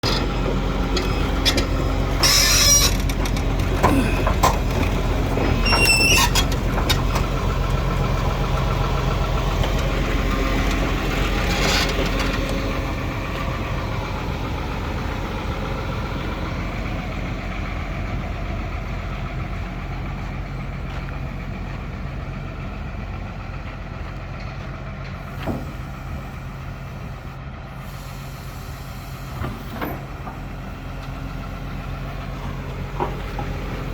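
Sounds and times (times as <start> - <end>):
excavator diesel engine running: 0.0 - 33.9
brief squeal: 2.2 - 3.0, 5.5 - 6.4.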